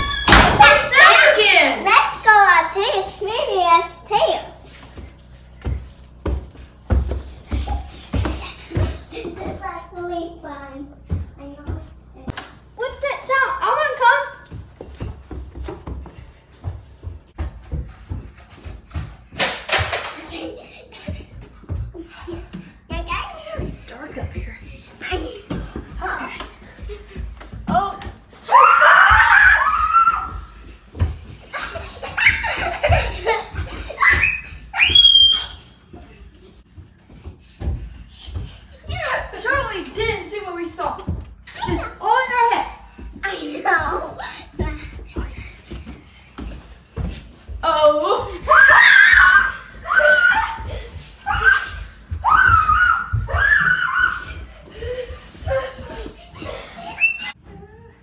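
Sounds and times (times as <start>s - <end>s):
high-pitched voice laughing and squealing: 55.4s - 58.0s.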